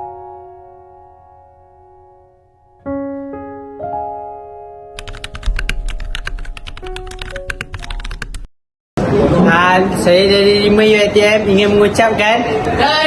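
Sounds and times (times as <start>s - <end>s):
piano notes held: 0.0s - 8.5s
rapid typing clicks: 5.0s - 8.5s.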